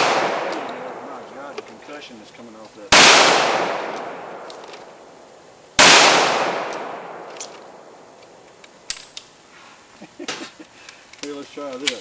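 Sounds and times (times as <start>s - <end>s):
handgun shot: 5.8s - 7.6s.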